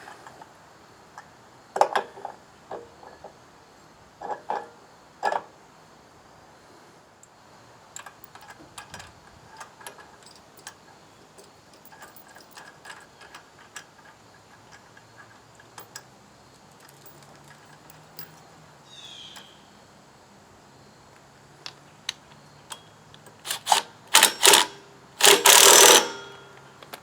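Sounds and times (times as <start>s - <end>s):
hand tools clicking and tapping: 21.6s - 27.0s.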